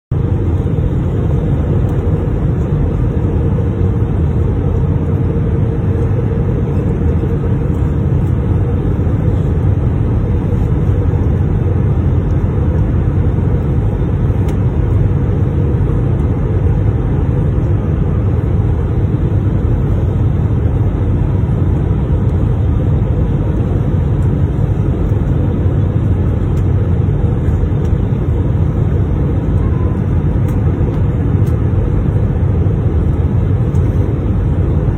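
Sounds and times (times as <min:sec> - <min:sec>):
airliner landing roar: 0:00.1 - 0:34.9.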